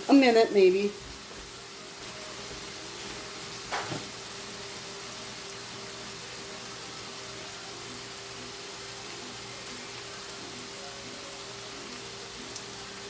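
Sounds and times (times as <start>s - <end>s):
vegetables sizzling in a pan: 0.0s - 13.0s.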